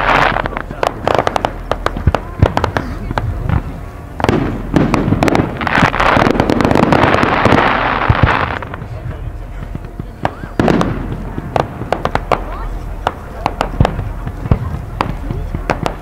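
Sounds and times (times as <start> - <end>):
fireworks shells bursting: 0.0 - 8.8.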